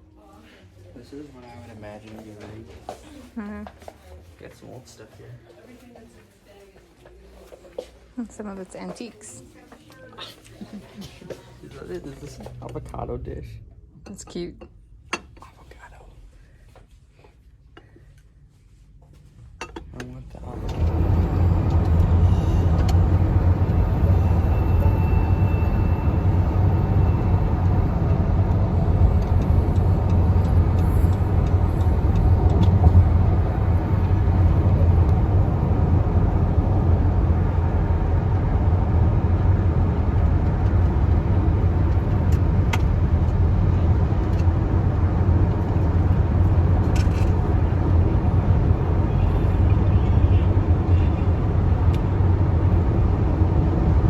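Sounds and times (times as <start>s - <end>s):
road rumble inside moving car: 11.3s - 14.0s, 19.6s - 54.0s
car engine hum: 20.3s - 54.0s.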